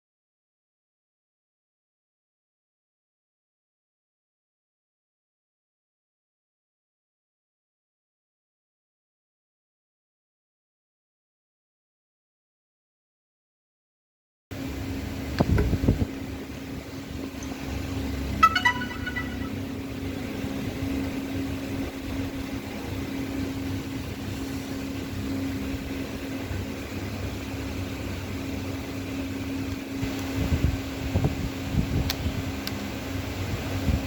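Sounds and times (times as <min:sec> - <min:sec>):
fan motor whirring hum: 0:14.5 - 0:34.0
short electronic chime: 0:18.4 - 0:19.9.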